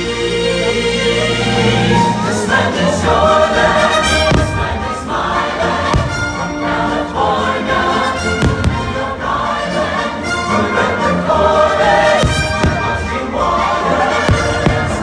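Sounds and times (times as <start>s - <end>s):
choir singing with orchestra: 0.0s - 15.0s
firework bursts: 3.0s - 7.0s, 8.2s - 9.2s, 11.9s - 15.0s.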